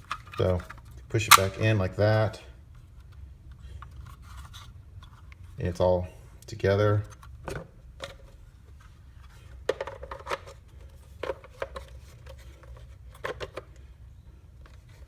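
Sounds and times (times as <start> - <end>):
plastic parts clicking and scraping: 0.0 - 1.7, 2.8 - 5.6, 7.0 - 13.9
low steady hum: 0.0 - 15.0.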